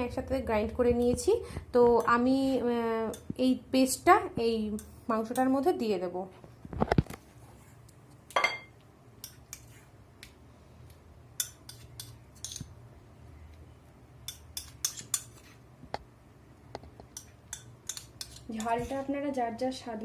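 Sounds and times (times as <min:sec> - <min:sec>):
metal spoon clinking on bowl: 0:08.4 - 0:09.4.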